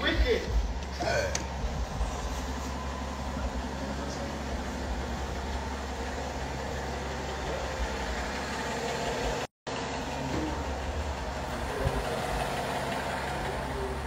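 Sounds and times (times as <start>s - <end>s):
car cabin low rumble: 0.3s - 8.4s.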